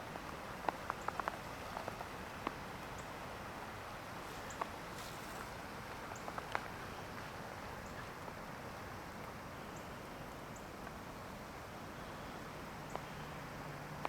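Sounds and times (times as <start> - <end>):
steady outdoor hiss: 0.0 - 14.0
small clicks and ticks: 0.2 - 3.1, 6.1 - 6.8.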